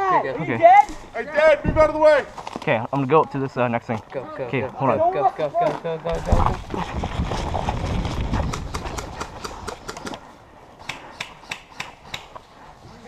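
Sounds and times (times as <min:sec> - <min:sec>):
sharp clicks: 0:10.8 - 0:12.4.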